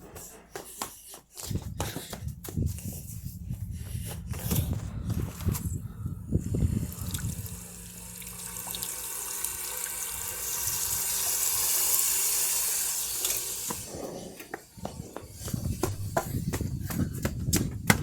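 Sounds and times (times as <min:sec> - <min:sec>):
water running from a hose: 0:06.5 - 0:14.0.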